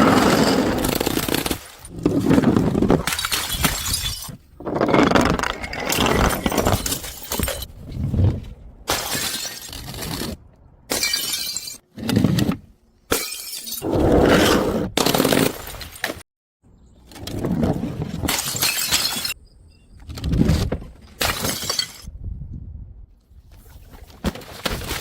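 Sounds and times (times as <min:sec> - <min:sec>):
glass bottles shattering: 0:03.0 - 0:04.4, 0:05.5 - 0:07.7, 0:08.9 - 0:10.2, 0:10.9 - 0:11.8, 0:13.1 - 0:13.8, 0:18.3 - 0:19.4, 0:21.2 - 0:22.1.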